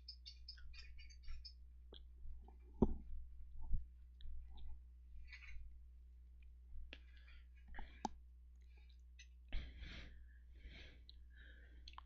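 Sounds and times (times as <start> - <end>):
low electrical hum: 0.0 - 12.0
soft breaths: 6.7 - 12.0.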